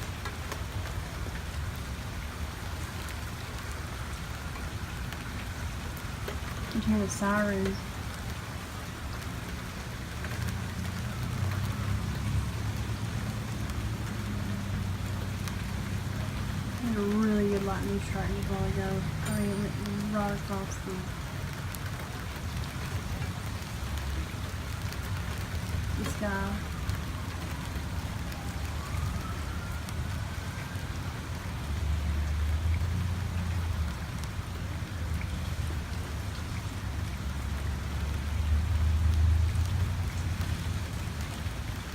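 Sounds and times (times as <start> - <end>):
steady rain falling: 0.0 - 41.9.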